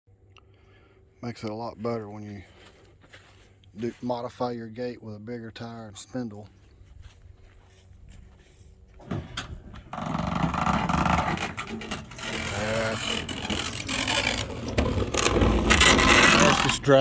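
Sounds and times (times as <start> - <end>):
gate opener motor running: 9.0 - 16.9
part scraping on plastic: 9.2 - 17.0.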